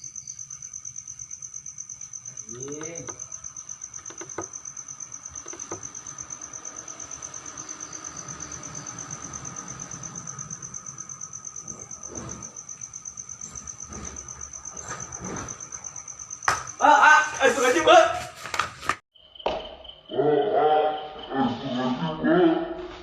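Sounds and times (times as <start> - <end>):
insect trilling: 0.0 - 17.8.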